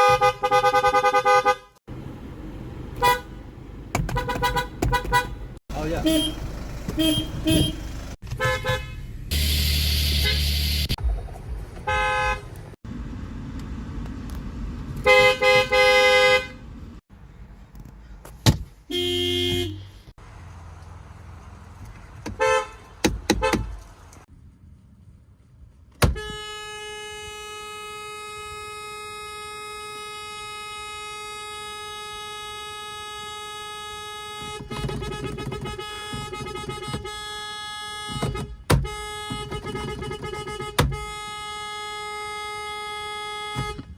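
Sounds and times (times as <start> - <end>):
car horns honking: 0.0 - 1.8, 2.9 - 11.0, 11.8 - 12.8, 15.0 - 16.7, 18.9 - 20.0, 22.3 - 23.8, 26.0 - 43.9
long steady car horn blast: 3.0 - 3.3, 6.0 - 9.4, 15.1 - 16.6, 18.9 - 19.9, 26.2 - 43.9.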